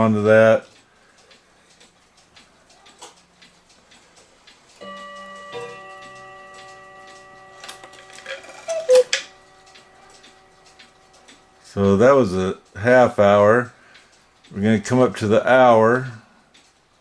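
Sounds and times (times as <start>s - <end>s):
clock ticking: 0.0s - 17.0s
two-note cuckoo call: 4.8s - 11.7s
gong ringing: 4.8s - 12.4s.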